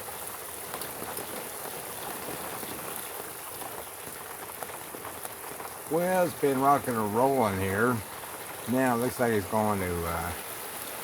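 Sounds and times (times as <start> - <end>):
light rain pattering: 0.0 - 11.0.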